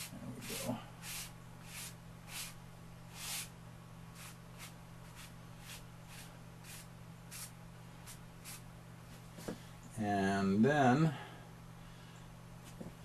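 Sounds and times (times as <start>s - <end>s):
chalk rubbing across paper: 0.0s - 3.5s, 4.1s - 8.6s
steady low hum: 0.0s - 13.0s.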